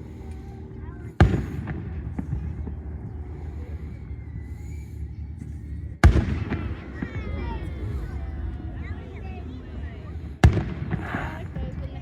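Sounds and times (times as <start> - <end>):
steady low rumble: 0.0 - 12.0
firework bang with echo: 6.0 - 8.2.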